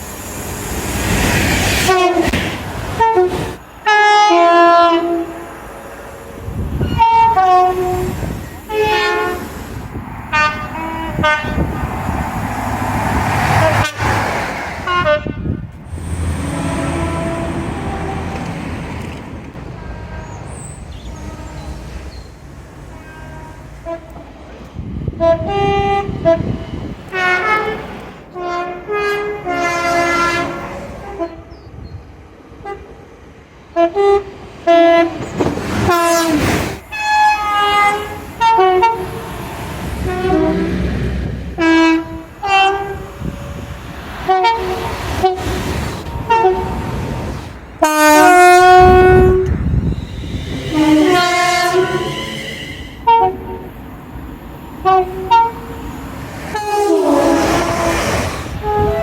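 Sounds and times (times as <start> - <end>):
trains rumbling: 0.0 - 59.0
train air horn blasts: 1.8 - 2.4, 3.0 - 5.5, 6.8 - 9.6, 10.3 - 12.0, 13.4 - 14.2, 14.8 - 18.6, 22.9 - 24.2, 25.2 - 31.6, 35.8 - 39.3, 40.0 - 47.0, 47.8 - 53.7, 54.8 - 55.8, 56.5 - 59.0.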